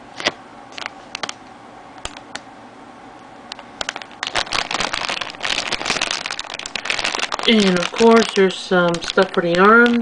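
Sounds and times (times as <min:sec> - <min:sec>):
packaging crinkling: 0:00.2 - 0:01.4, 0:03.6 - 0:10.0.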